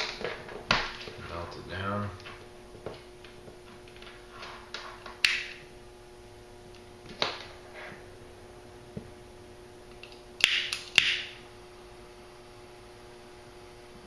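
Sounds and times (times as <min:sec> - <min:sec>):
faint steady hum: 0:00.0 - 0:14.0
lighter clicks: 0:05.2 - 0:05.6.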